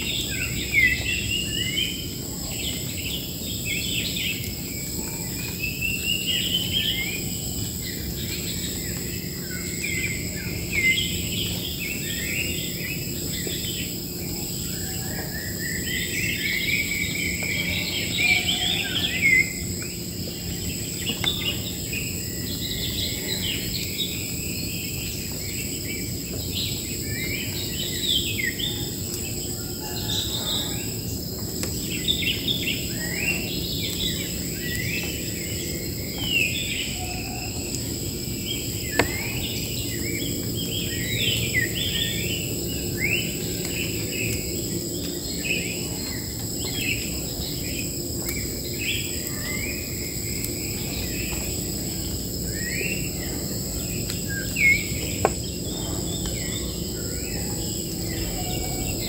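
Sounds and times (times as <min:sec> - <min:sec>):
high-pitched insect drone: 0:00.0 - 0:59.0
wild birds chirping and singing: 0:00.0 - 0:59.0.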